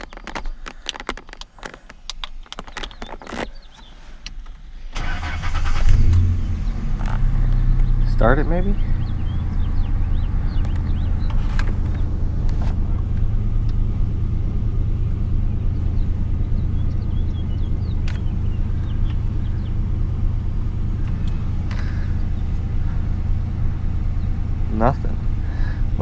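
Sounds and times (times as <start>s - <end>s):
sharp clicks: 0.0s - 6.2s, 17.9s - 19.2s
engine idling: 4.4s - 26.0s.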